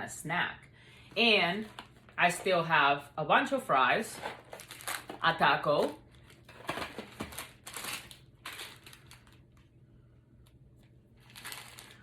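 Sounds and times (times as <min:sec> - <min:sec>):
paper wrappers crinkling: 0:04.1 - 0:09.5, 0:11.2 - 0:12.0.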